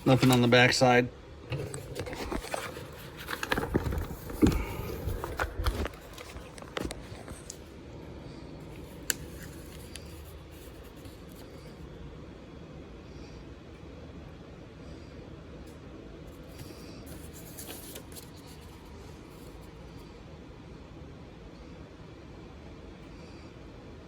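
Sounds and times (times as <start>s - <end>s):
paper sheets being handled: 0.0s - 0.9s, 1.5s - 7.6s, 8.7s - 11.7s, 16.3s - 19.7s.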